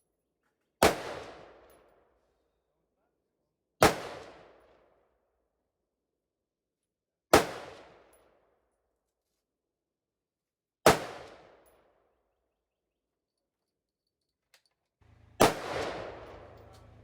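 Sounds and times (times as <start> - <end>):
gunshots ringing out: 0.8 - 1.6, 3.8 - 4.5, 7.3 - 8.0, 10.9 - 11.6, 15.1 - 17.0.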